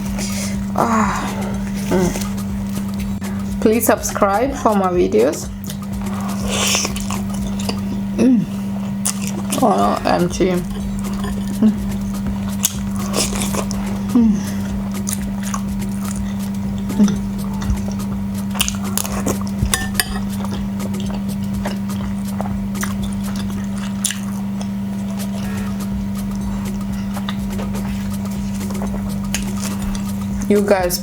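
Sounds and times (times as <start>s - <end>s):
steady low hum: 0.0s - 31.0s
dishes clinking: 18.7s - 21.1s.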